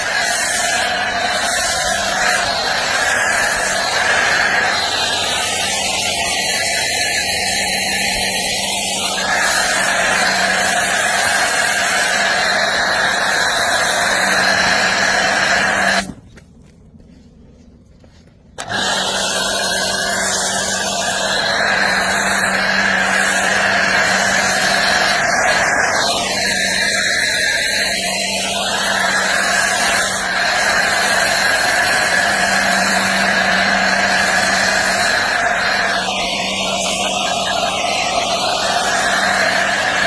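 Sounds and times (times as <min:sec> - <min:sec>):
water spray rushing: 0:00.0 - 0:16.2, 0:18.6 - 0:40.0
low motor hum: 0:00.0 - 0:40.0.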